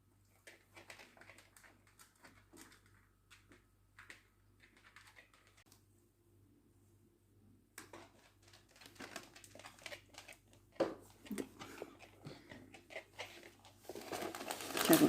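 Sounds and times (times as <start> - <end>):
packet crinkling and rustling: 0.4 - 5.6, 7.8 - 15.0.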